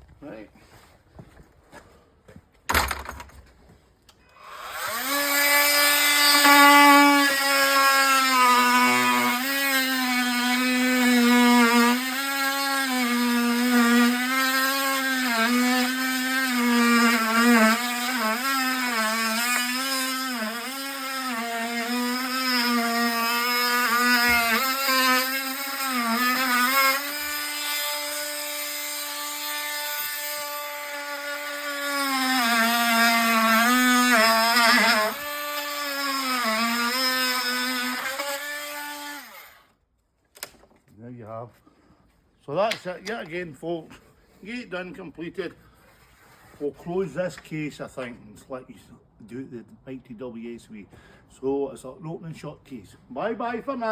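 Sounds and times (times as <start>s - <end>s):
cordless power tool motor running: 4.3s - 39.6s.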